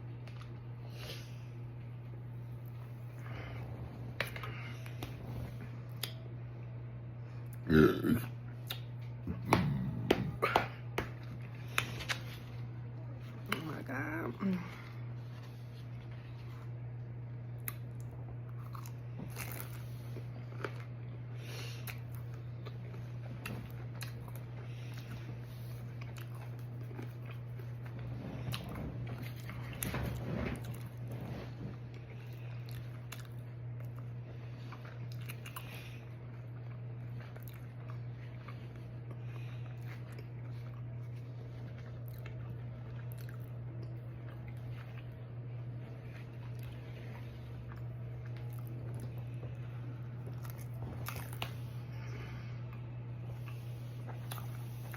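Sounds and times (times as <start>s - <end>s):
steady low hum: 0.0s - 54.9s
person chewing crunchy food: 15.6s - 51.8s, 52.6s - 54.9s.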